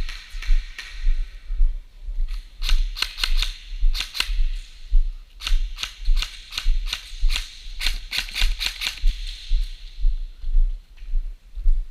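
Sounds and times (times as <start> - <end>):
low rumble: 0.0 - 2.9
sharp clicks: 2.3 - 4.5, 5.4 - 9.7.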